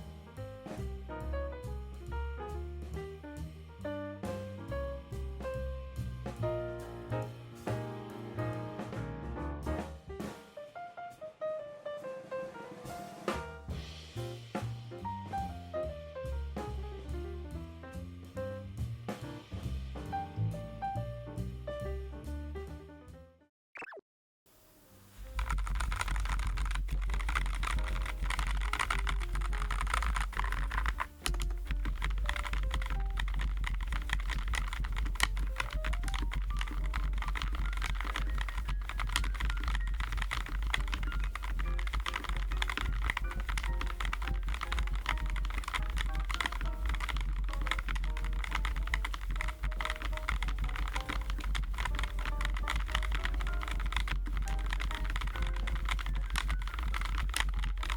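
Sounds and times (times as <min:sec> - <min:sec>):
fast typing on keyboard: 0:25.2 - 0:57.9.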